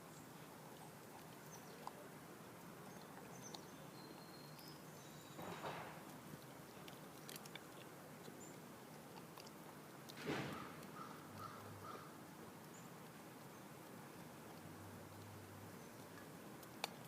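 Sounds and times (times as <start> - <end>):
dog chewing and crunching bone: 0.5 - 12.0, 12.6 - 17.0.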